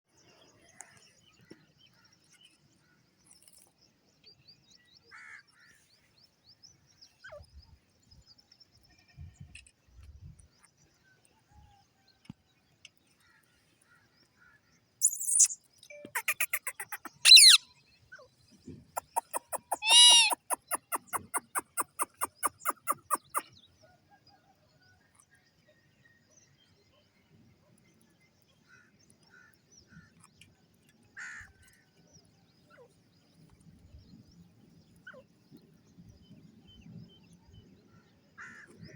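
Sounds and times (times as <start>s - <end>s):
parrots calling: 15.0s - 17.6s, 19.0s - 23.4s.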